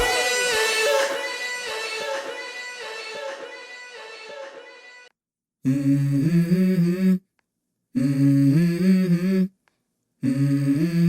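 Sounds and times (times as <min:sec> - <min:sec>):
man humming: 0:05.6 - 0:07.3, 0:08.0 - 0:09.6, 0:10.2 - 0:11.0.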